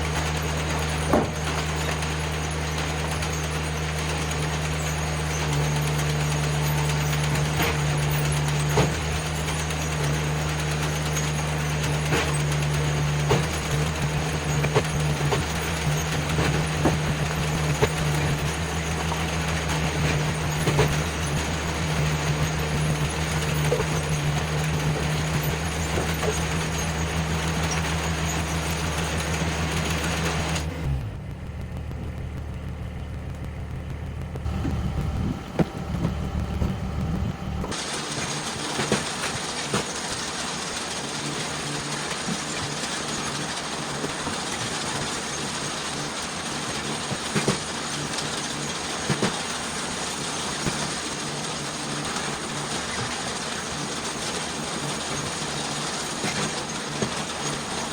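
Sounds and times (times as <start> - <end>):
log splitter engine running: 0.0 - 57.9
wood knocking: 34.4 - 37.8.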